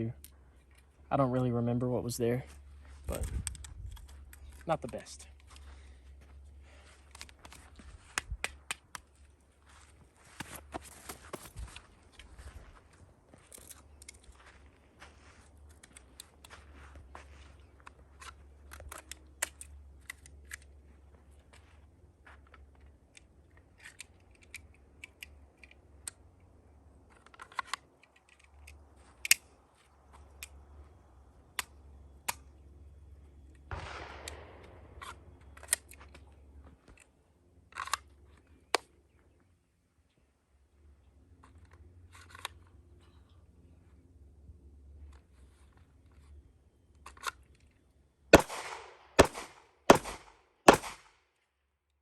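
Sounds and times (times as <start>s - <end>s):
handling clicks: 22.5s - 30.8s
gunshots: 33.7s - 35.3s, 48.3s - 51.1s.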